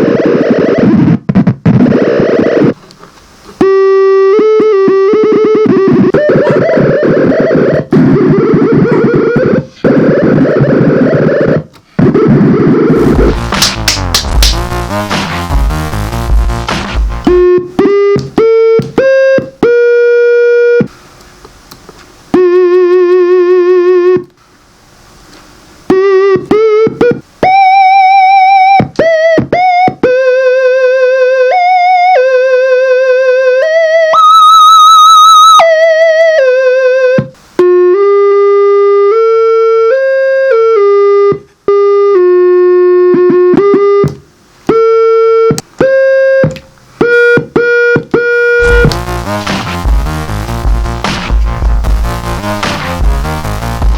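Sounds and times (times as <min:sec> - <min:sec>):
analog synthesizer tone: 0:34.1 - 0:35.9.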